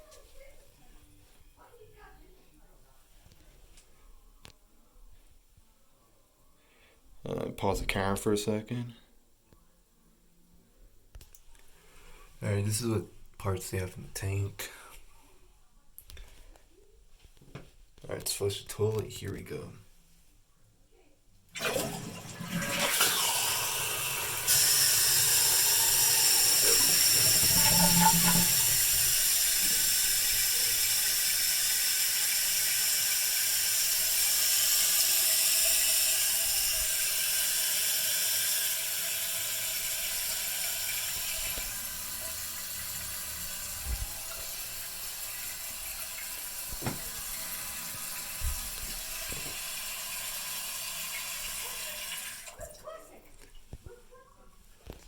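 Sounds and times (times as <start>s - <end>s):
toilet flushing: 21.5s - 52.6s
toilet tank refilling hiss: 21.6s - 52.6s.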